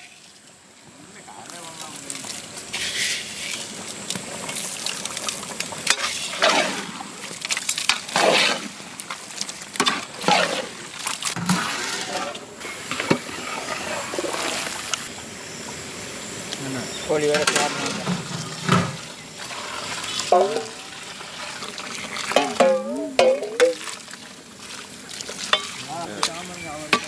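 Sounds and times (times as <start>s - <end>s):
thick liquid sloshing in a pot: 17.4s - 26.0s.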